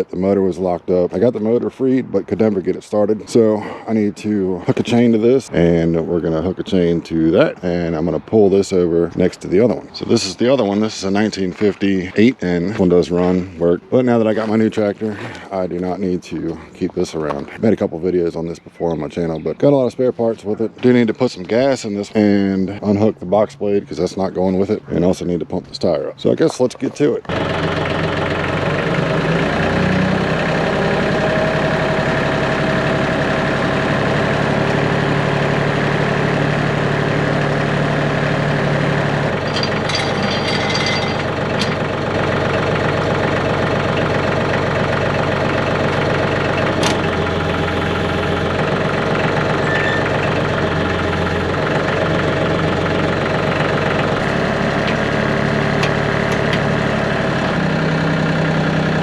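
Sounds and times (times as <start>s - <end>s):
tractor diesel engine running: 27.3s - 59.0s.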